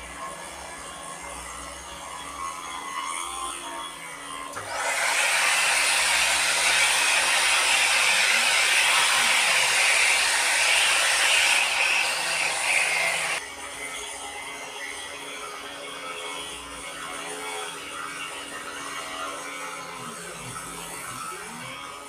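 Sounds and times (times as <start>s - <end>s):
milling cutter cutting noise: 0.0s - 14.7s.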